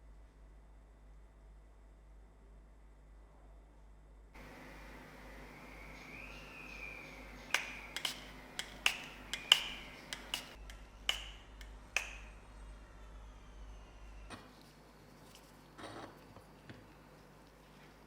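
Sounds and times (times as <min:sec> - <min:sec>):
light metallic clicks and taps: 0:07.5 - 0:12.4.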